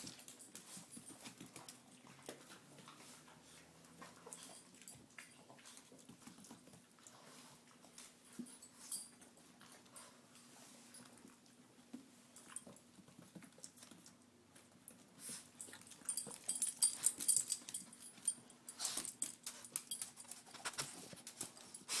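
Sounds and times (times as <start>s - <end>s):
dog clicks and scratches: 15.6s - 22.0s.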